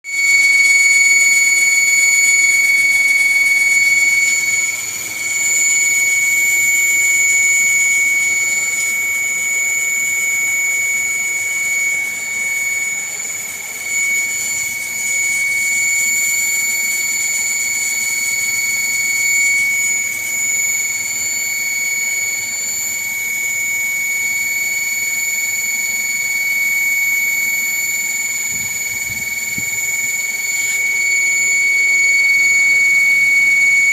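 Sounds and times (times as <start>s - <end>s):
air conditioner high-pitched whine: 0.1s - 33.9s.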